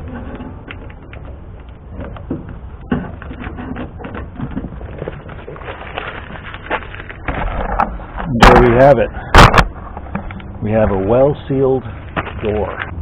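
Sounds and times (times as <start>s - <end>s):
plastic sheeting rustling: 4.8s - 7.5s.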